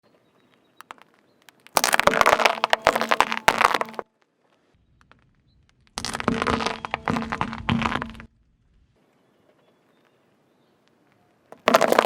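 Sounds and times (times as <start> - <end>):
tire crushing crunchy objects: 0.8 - 4.1, 4.8 - 9.0, 11.5 - 12.0.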